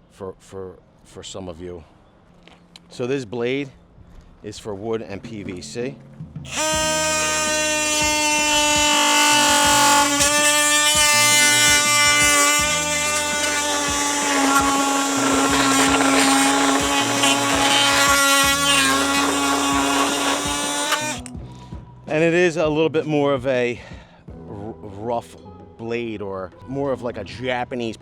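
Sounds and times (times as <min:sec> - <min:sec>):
oscillating multi-tool cutting: 0:06.5 - 0:21.3.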